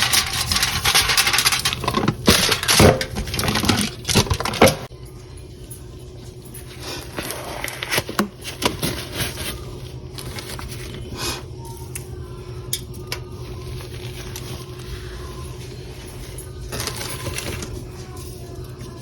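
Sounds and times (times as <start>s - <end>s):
scrapes: 0.0s - 4.9s.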